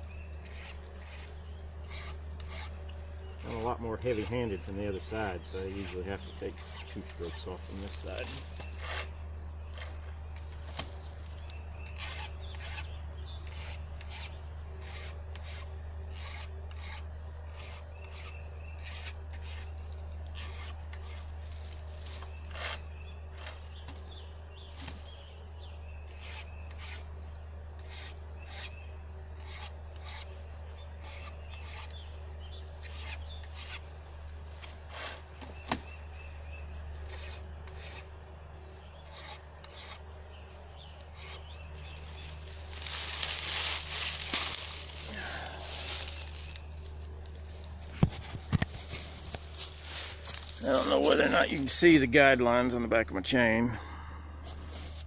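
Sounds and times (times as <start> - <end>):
steady low hum: 0.0 - 55.0
file rasping on chainsaw chain: 0.4 - 2.8, 3.4 - 9.1, 13.5 - 21.3, 27.8 - 28.8, 29.4 - 30.3, 37.1 - 38.1, 39.0 - 40.0.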